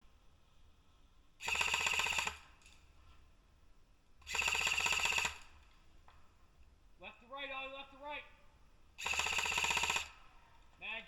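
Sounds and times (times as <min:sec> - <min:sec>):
airsoft gun full-auto bursts: 0:01.4 - 0:02.5, 0:04.3 - 0:05.6, 0:09.0 - 0:10.2.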